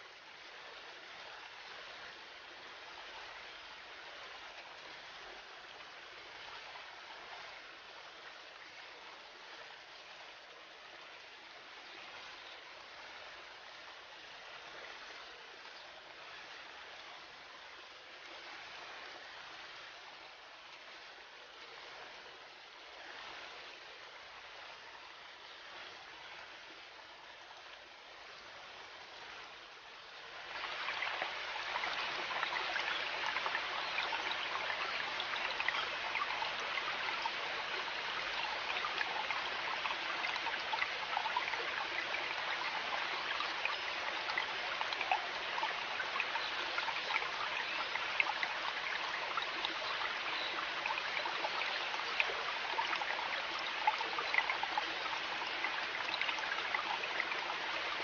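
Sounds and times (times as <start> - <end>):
river water flowing and babbling: 0.0 - 58.0.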